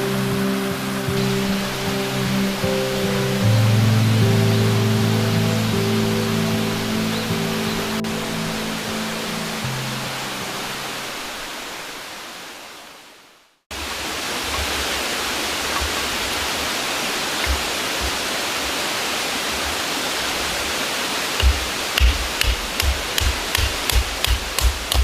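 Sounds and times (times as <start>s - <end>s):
background music: 0.0s - 11.0s
steady rushing noise: 0.0s - 12.0s.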